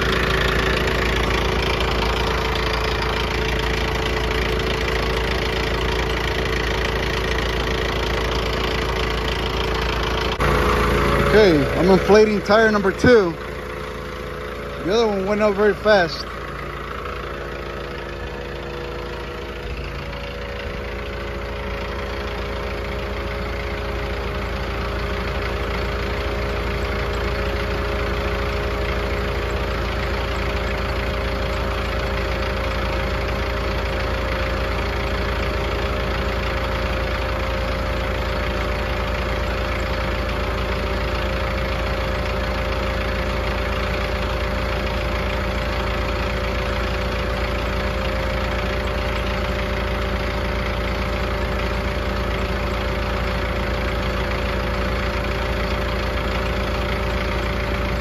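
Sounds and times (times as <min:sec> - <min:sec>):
tire inflator compressor running: 0:00.0 - 0:58.0
tractor diesel engine idling: 0:00.0 - 0:58.0.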